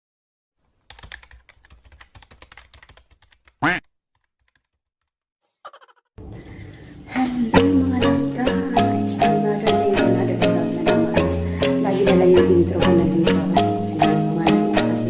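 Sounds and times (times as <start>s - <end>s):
keyboard typing clicks: 0.9s - 4.8s
music: 7.1s - 15.0s.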